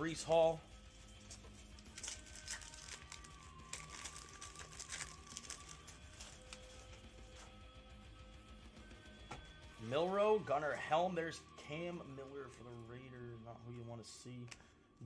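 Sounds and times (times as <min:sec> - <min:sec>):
foil wrapper crinkling: 0:01.0 - 0:07.6.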